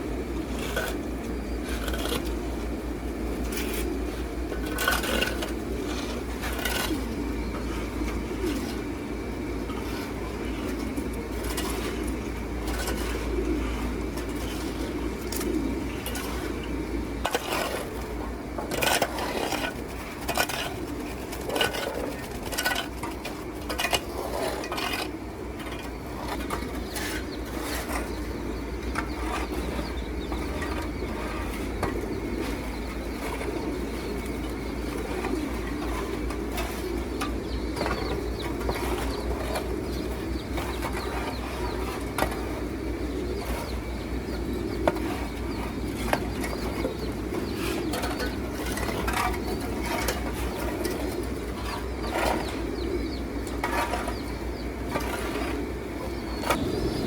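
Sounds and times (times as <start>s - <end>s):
pigeons cooing: 0.0s - 57.0s.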